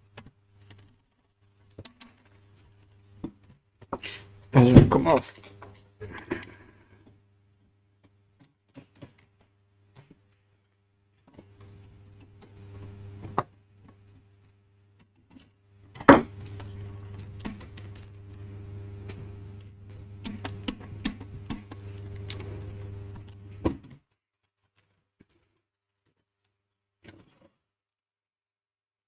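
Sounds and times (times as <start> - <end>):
steady low hum: 11.5 - 13.4, 15.8 - 23.8
small parts clicking and knocking: 15.0 - 18.4, 19.1 - 26.2.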